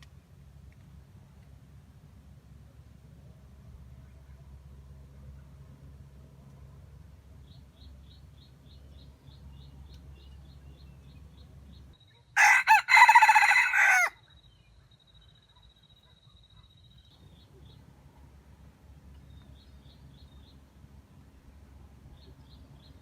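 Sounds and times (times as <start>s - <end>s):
rooster crowing: 12.4s - 14.2s.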